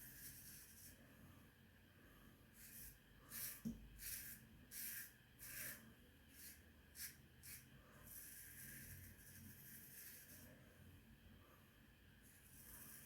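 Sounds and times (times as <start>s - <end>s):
razor scraping over stubble: 6.4s - 10.4s.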